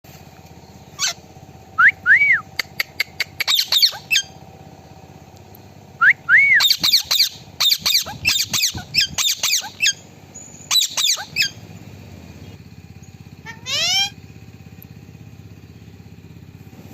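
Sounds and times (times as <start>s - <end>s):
steady low hum: 0.1s - 16.9s
parrot whistling and screeching: 1.0s - 1.2s, 3.4s - 4.4s, 6.3s - 10.0s, 10.7s - 11.6s, 13.5s - 14.2s.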